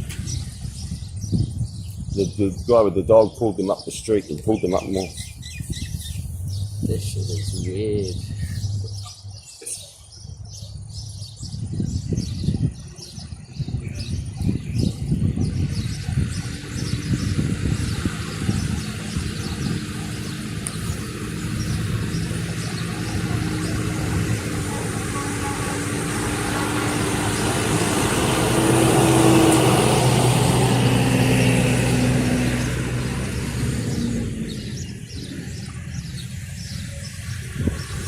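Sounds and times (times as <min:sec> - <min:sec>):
car driving past: 0:15.9 - 0:38.0.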